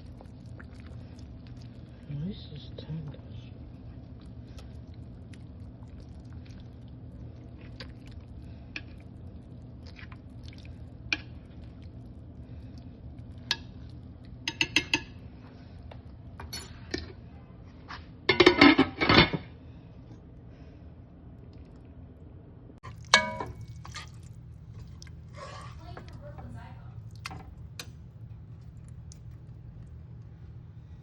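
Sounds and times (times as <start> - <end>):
utensils and dishes clinking: 16.4 - 17.1, 22.9 - 24.3
low hum: 19.5 - 31.0.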